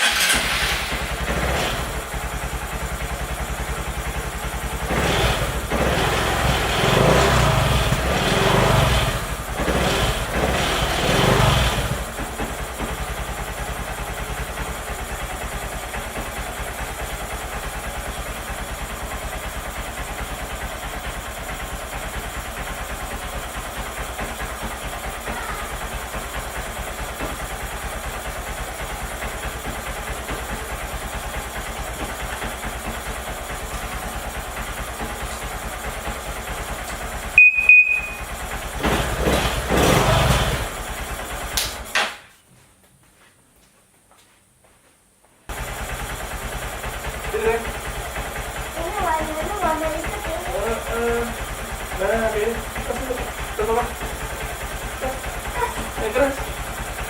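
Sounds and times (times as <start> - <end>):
motorcycle engine revving and idling: 0.0 - 42.0, 45.5 - 57.0.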